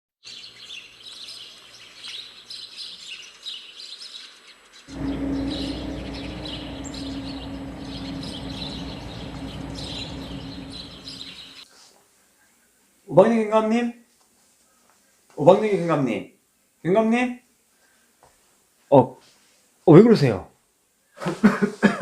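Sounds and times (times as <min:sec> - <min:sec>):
small birds chirping: 0:00.3 - 0:11.6
steady hum with low rushing: 0:04.9 - 0:11.6.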